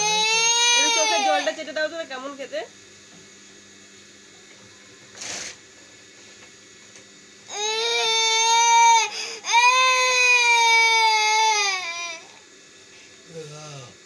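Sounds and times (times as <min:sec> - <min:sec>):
child crying: 0:00.0 - 0:01.6, 0:07.5 - 0:12.3.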